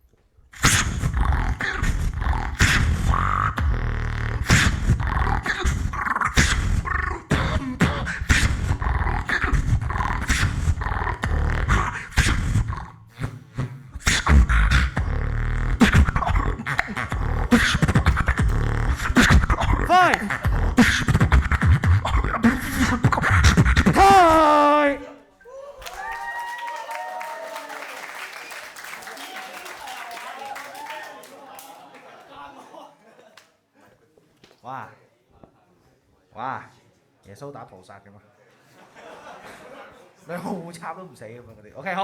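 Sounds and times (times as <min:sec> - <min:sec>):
beatboxing: 0:00.5 - 0:25.0
wavering pitched vocal sound: 0:00.6 - 0:25.2.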